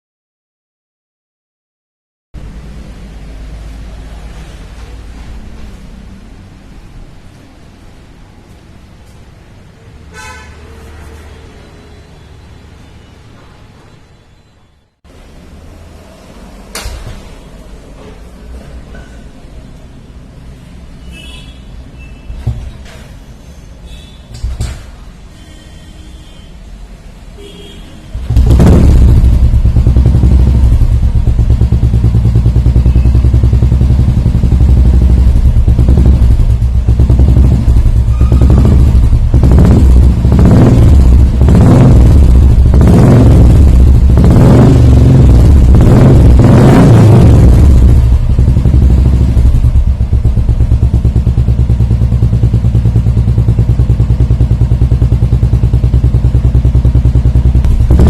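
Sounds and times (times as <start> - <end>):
motorcycle engine idling and revving: 27.4 - 58.0.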